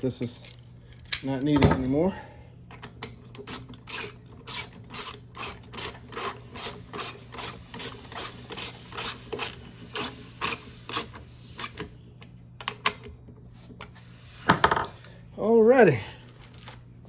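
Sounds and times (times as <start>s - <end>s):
socket ratchet rasping: 3.4s - 11.8s.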